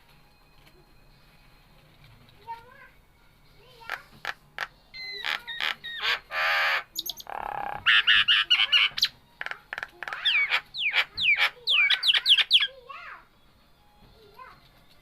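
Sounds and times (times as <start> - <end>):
myna calling: 3.9 - 12.7.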